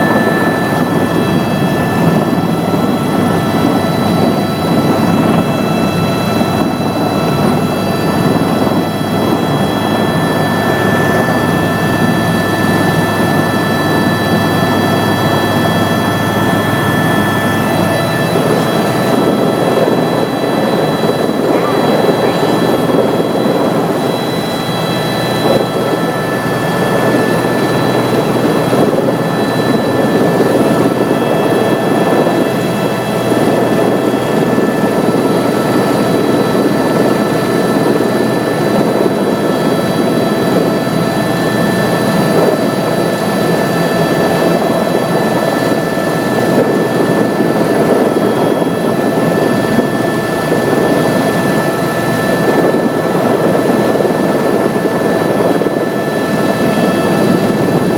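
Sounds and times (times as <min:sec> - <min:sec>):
helicopter rotor and engine noise: 0:00.0 - 0:57.9
thin steady whines: 0:00.0 - 0:57.9.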